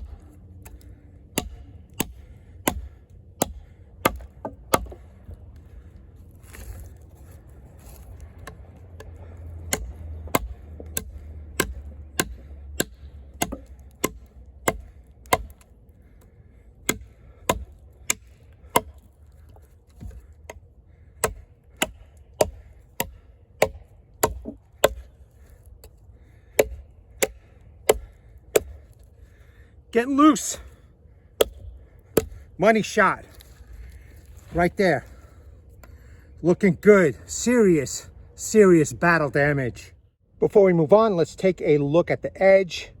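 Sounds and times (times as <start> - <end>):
knife chopping into log: 1.4 - 5.0, 7.9 - 15.6, 21.2 - 25.0, 26.6 - 28.8.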